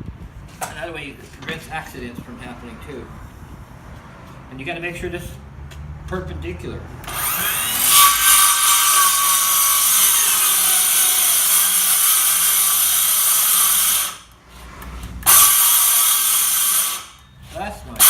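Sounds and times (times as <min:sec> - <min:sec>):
circular saw cutting board: 0:07.1 - 0:14.3, 0:15.2 - 0:17.6.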